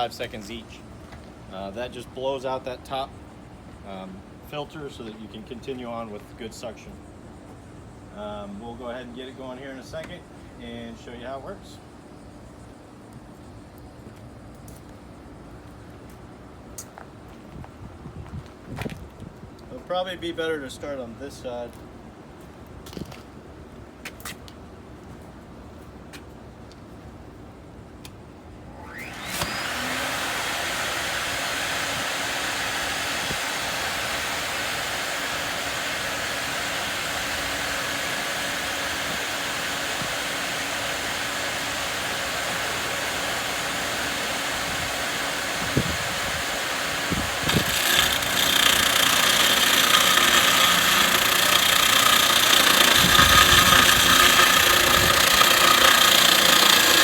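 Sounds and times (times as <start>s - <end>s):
dust extractor motor running: 28.8s - 57.0s
concrete floor grinder: 46.5s - 57.0s.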